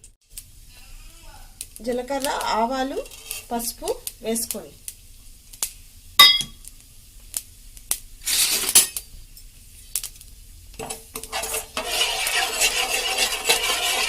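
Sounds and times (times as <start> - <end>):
seeds sizzling in hot oil: 0.2 - 14.0
metal spoon clinking and stirring: 10.8 - 14.0.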